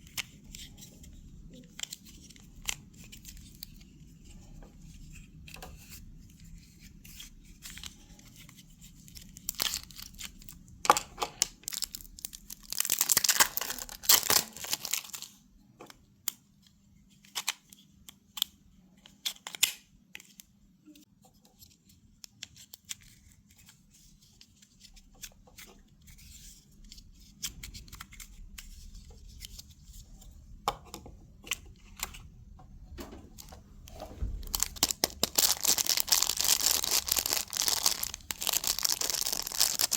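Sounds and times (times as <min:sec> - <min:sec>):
candy packaging tearing and crinkling: 0:08.8 - 0:15.4, 0:34.4 - 0:39.9.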